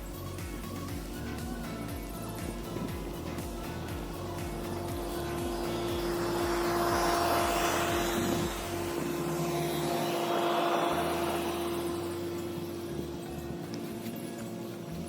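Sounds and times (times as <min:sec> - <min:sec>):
low pulsing bass notes: 0:00.0 - 0:14.0
machine whine: 0:00.0 - 0:15.0
rushing air: 0:02.6 - 0:13.6.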